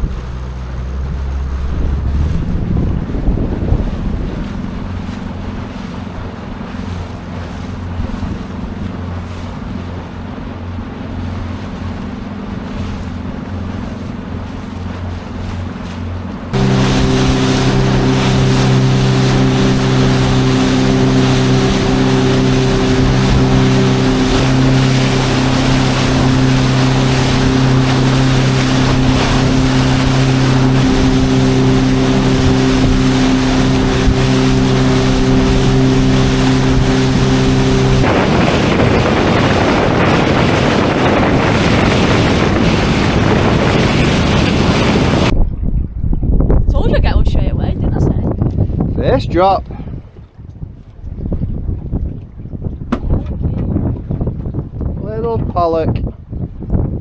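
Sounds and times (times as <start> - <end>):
water rushing: 0.0 - 45.3
outboard motor running: 0.0 - 45.6, 46.6 - 57.0
wind: 0.0 - 57.0.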